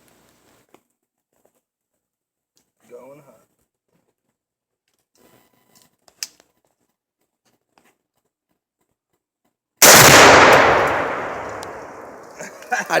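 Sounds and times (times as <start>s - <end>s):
explosion with rumbling echo: 9.8s - 12.4s.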